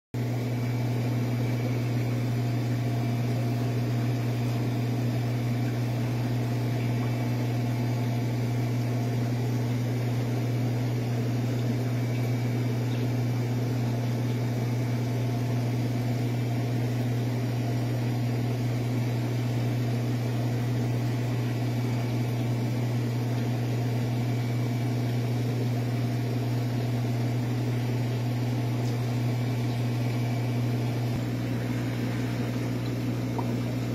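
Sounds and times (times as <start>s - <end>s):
aquarium pump hum: 0.2s - 33.9s.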